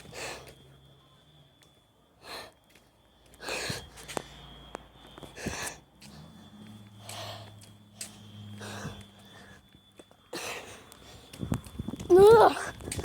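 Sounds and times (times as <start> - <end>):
person breathing hard: 2.2 - 2.6, 3.3 - 4.5, 7.0 - 11.3.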